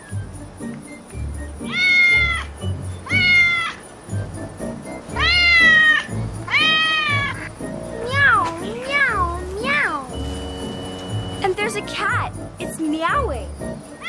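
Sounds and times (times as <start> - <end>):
background music: 0.0 - 14.0
cat meowing: 1.6 - 3.8, 5.1 - 10.2.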